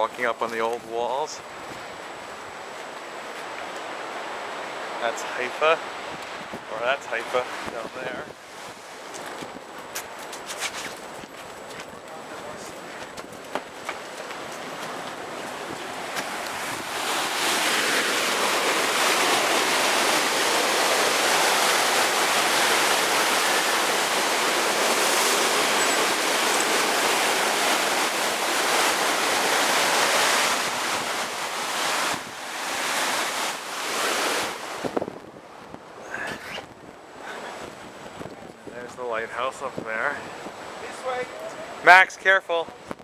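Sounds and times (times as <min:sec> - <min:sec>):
sea waves breaking: 0:00.0 - 0:42.1.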